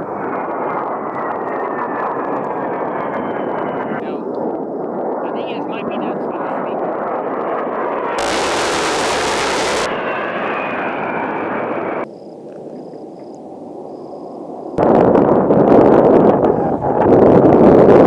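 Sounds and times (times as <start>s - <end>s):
jet engine roar: 0.0s - 18.0s
faint falling whine: 8.2s - 13.4s.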